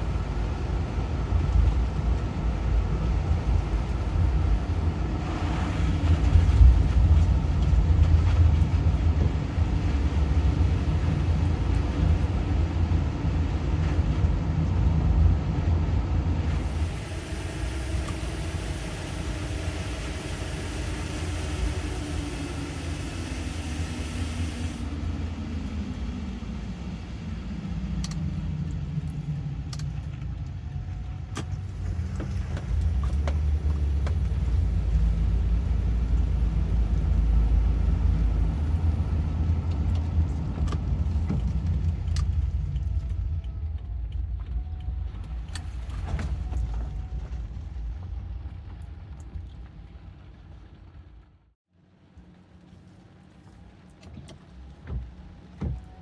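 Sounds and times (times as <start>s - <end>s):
car tyres hissing on wet road: 0.0s - 29.0s, 31.6s - 42.6s
car engine and road rumble: 0.0s - 56.0s.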